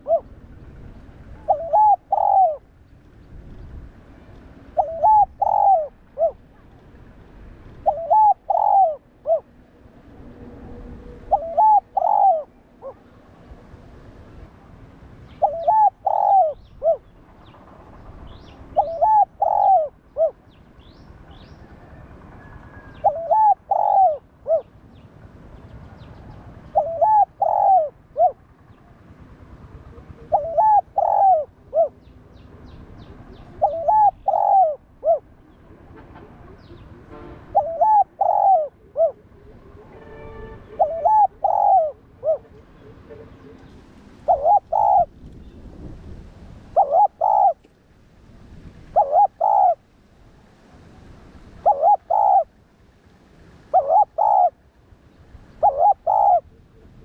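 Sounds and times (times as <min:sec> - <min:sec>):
dove cooing: 0:00.0 - 0:00.4, 0:01.3 - 0:02.7, 0:04.7 - 0:06.7, 0:07.7 - 0:09.6, 0:11.2 - 0:13.2, 0:15.3 - 0:17.2, 0:18.4 - 0:20.5, 0:21.4 - 0:24.7, 0:26.6 - 0:28.5, 0:29.7 - 0:32.1, 0:33.3 - 0:35.4, 0:37.5 - 0:39.7, 0:40.7 - 0:45.1, 0:46.7 - 0:47.7, 0:48.9 - 0:49.8, 0:51.6 - 0:52.5, 0:53.7 - 0:54.6, 0:55.5 - 0:57.0.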